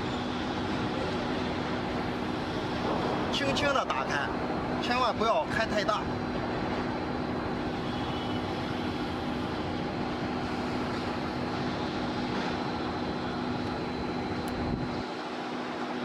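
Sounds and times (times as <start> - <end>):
machine engine humming: 5.8 - 16.0.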